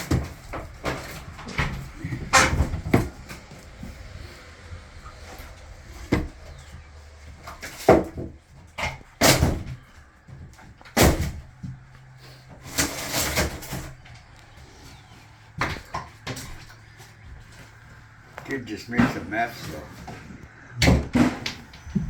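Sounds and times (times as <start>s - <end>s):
cabinet doors and drawers banging: 0.0s - 14.0s, 18.5s - 22.0s.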